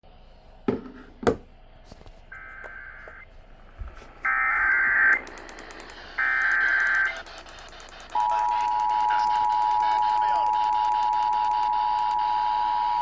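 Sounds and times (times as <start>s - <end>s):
sharp clicks: 5.1s - 12.1s.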